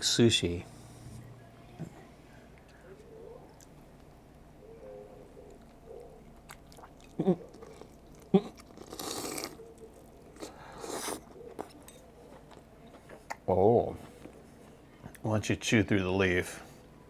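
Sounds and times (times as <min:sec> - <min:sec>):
person chewing: 0:05.5 - 0:13.4.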